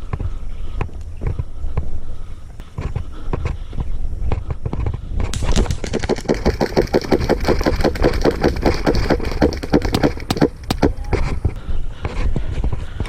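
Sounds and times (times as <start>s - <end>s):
wind rumble on microphone: 0.0s - 13.0s
running footsteps: 2.6s - 13.0s.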